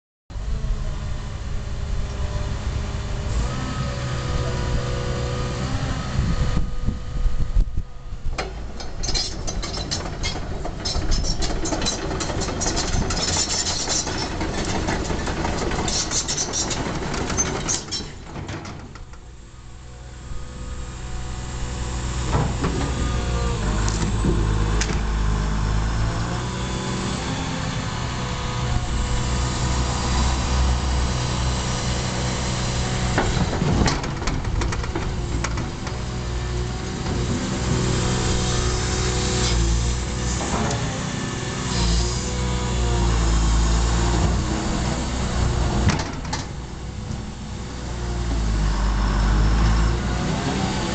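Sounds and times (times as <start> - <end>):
excavator diesel engine running: 0.4 - 50.9
metallic clatter and knocks: 8.4 - 19.2.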